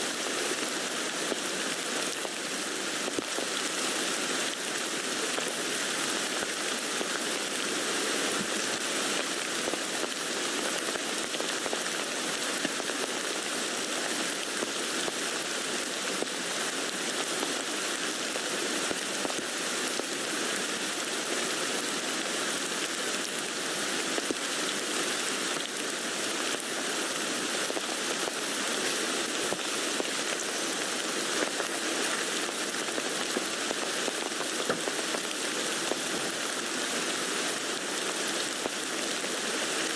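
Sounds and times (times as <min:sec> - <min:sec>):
rain pattering on tent fabric: 0:00.0 - 0:39.9.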